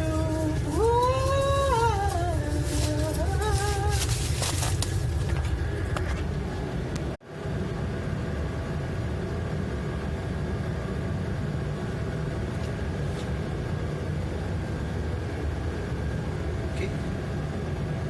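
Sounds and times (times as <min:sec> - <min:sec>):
faint steady tones: 0:00.0 - 0:07.2
low engine rumble: 0:00.0 - 0:18.0.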